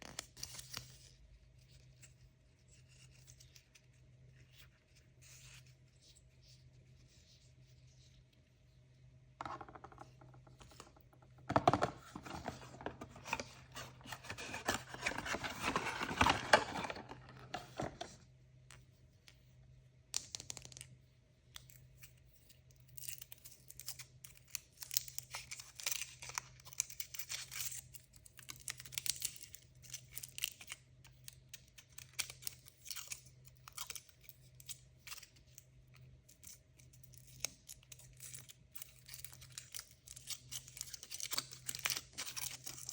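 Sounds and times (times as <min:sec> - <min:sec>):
packaging tearing and crinkling: 0:12.2 - 0:18.0, 0:37.2 - 0:42.9.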